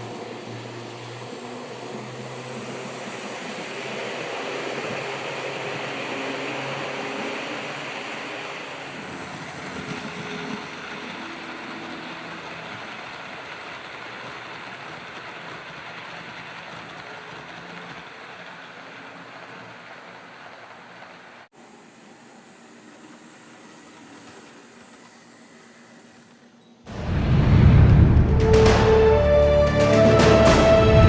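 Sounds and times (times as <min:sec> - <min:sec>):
wheels on rails: 0:00.0 - 0:21.5
model train motor whirring: 0:01.0 - 0:21.4.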